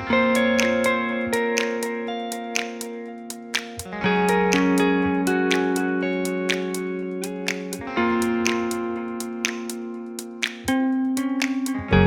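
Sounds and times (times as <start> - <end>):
guitar-led instrumental music: 0.0 - 12.0.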